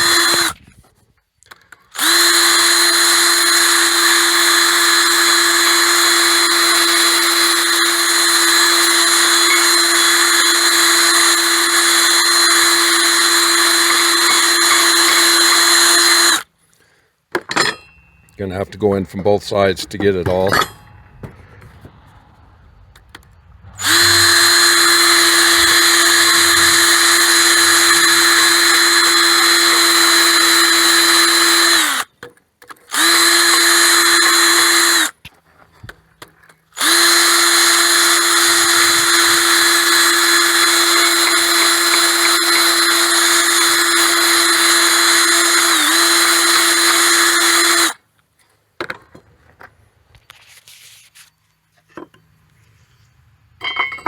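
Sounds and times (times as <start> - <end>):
power tool sanding disc whine: 0.0 - 0.6, 2.0 - 16.4, 23.8 - 32.1, 32.9 - 35.1, 36.8 - 48.0.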